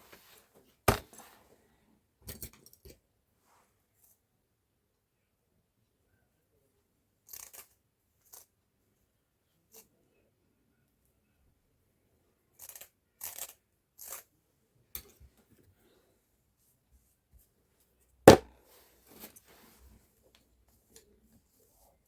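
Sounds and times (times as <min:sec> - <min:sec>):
handling rustles: 0:00.0 - 0:01.4, 0:18.3 - 0:19.9
sharp loud knock: 0:18.3 - 0:18.5.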